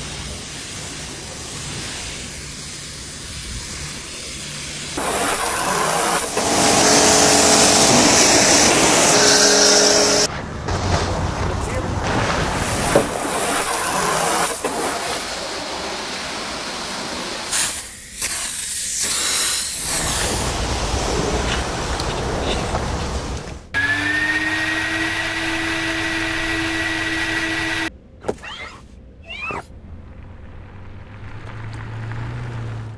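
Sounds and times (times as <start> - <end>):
hissing water spray: 0.0 - 10.3, 12.1 - 23.7
machine whine: 5.0 - 10.3, 23.8 - 27.9.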